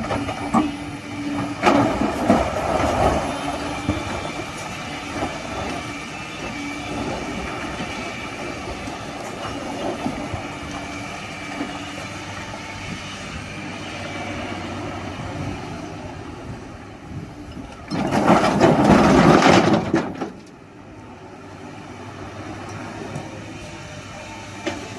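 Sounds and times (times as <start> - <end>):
excavator diesel engine running: 0.0 - 24.9
boulders crashing into truck bed: 17.9 - 20.4.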